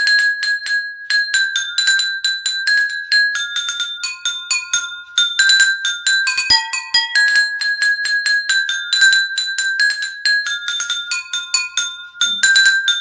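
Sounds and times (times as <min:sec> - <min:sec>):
high bell-like ringtone melody: 0:01.3 - 0:13.0.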